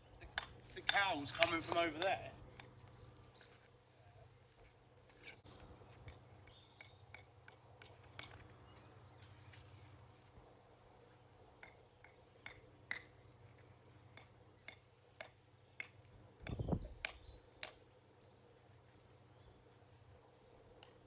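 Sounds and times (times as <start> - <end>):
bird chirp: 1.1 - 7.2, 15.6 - 18.6
clicks and taps on stone: 11.6 - 13.1, 14.1 - 17.8.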